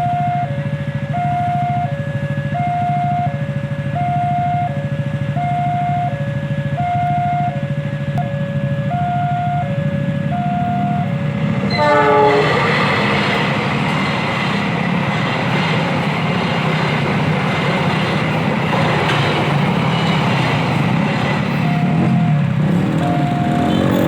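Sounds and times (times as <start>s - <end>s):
level crossing two-tone alarm: 0.0s - 11.1s
train rumbling over rails: 0.0s - 24.0s
train horn blast: 5.7s - 13.6s, 21.7s - 24.0s.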